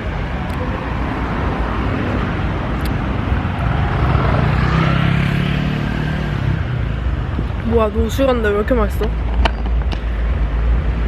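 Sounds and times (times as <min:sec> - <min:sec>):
vehicle engine passing close: 0:00.0 - 0:07.6
road traffic noise: 0:00.0 - 0:11.0.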